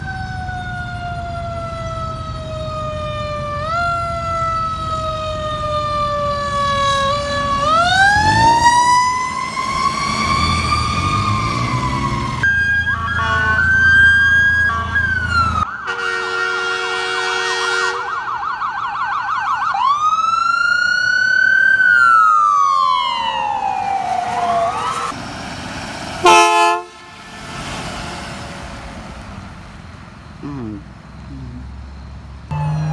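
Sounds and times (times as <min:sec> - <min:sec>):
fast-warbling siren: 0:00.0 - 0:16.3, 0:18.0 - 0:25.2, 0:32.5 - 0:32.9
loud horn blast: 0:12.9 - 0:18.2, 0:26.2 - 0:27.3.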